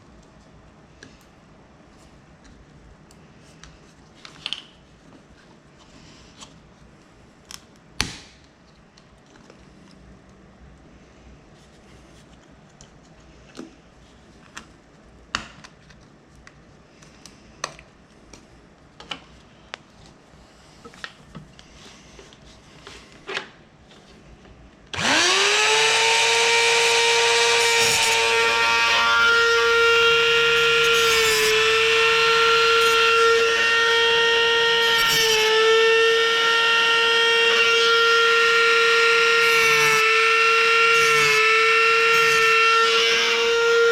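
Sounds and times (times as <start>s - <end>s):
rotary tool whining: 25.0s - 43.9s.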